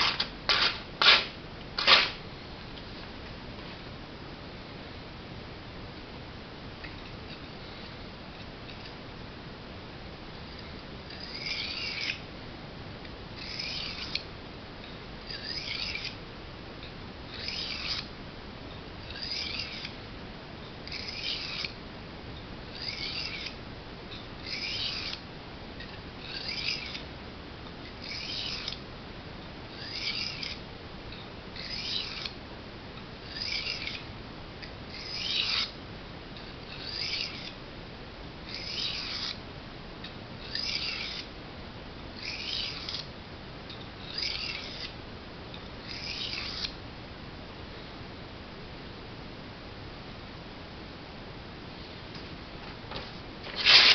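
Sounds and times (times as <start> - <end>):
knife scraping on whetstone: 0.0 - 2.1, 11.1 - 12.2, 13.4 - 14.2, 15.3 - 16.2, 17.3 - 18.1, 19.1 - 20.0, 20.9 - 21.8, 22.8 - 23.6, 24.4 - 25.2, 26.3 - 27.0, 28.0 - 28.8, 29.8 - 30.6, 31.6 - 32.4, 33.3 - 34.0, 34.9 - 35.7, 36.4 - 37.6, 38.5 - 39.4, 42.2 - 43.1, 44.1 - 44.9, 45.9 - 46.7, 52.9 - 53.9.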